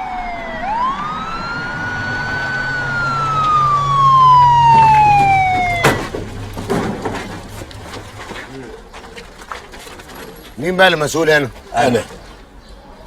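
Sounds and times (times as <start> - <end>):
police siren wailing: 0.0 - 6.7.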